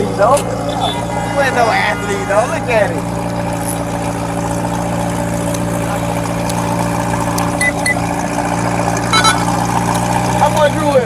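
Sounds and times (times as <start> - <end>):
vehicle engine idling: 0.0 - 11.0
short high beeps: 9.1 - 9.5.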